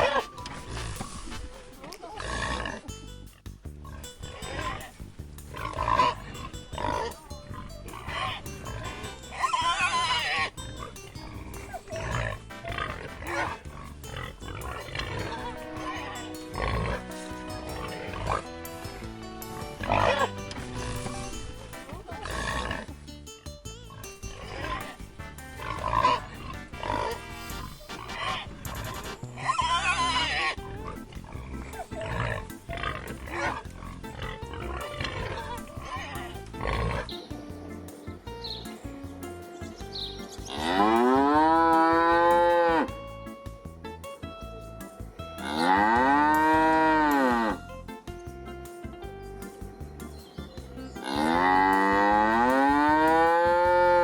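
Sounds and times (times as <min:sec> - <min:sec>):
pig squealing: 0:00.0 - 0:01.4, 0:03.8 - 0:18.5, 0:19.6 - 0:21.3, 0:22.2 - 0:22.9, 0:23.9 - 0:25.0, 0:25.6 - 0:37.3, 0:40.5 - 0:42.9
farm animal calling: 0:00.0 - 0:23.0, 0:23.9 - 0:43.0, 0:45.3 - 0:47.6, 0:50.2 - 0:54.0
background music: 0:00.0 - 0:54.0.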